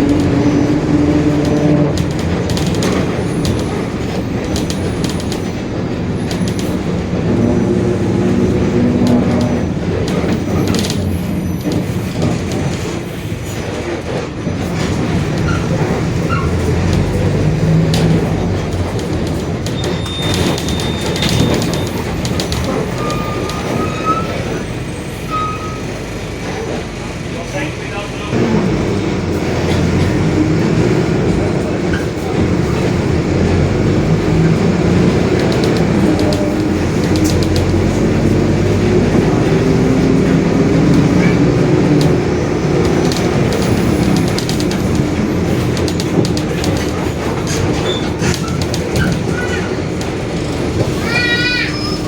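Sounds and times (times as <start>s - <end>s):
clicking rattles: 0.0s - 24.6s, 29.3s - 51.2s
bus diesel engine rumble: 0.0s - 52.0s.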